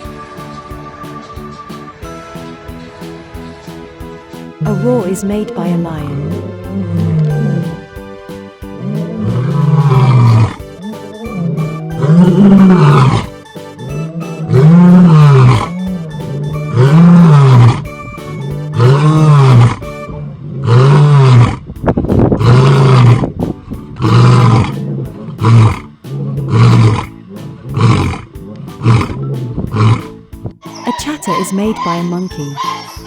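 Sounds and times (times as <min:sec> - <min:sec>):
lion roaring and grunting: 0:06.1 - 0:08.0, 0:08.6 - 0:30.2.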